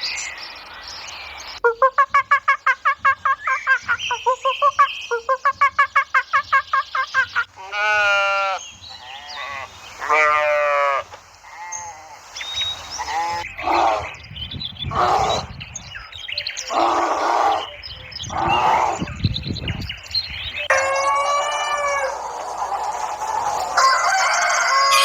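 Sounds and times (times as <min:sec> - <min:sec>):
sheep bleating: 0:07.6 - 0:12.0.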